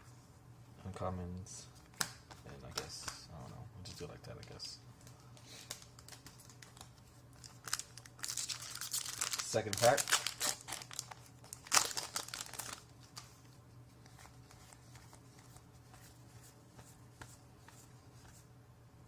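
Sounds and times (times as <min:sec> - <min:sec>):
cards being handled: 0:01.8 - 0:03.3, 0:03.9 - 0:18.5
wrapper crinkling and tearing: 0:05.6 - 0:13.3.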